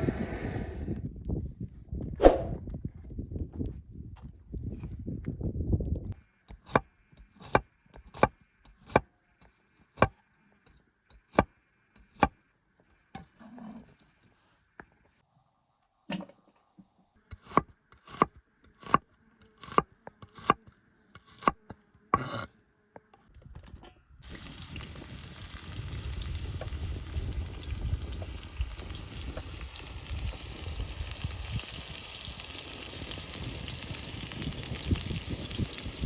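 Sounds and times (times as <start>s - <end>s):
food sizzling in a hot pan: 24.2s - 36.0s.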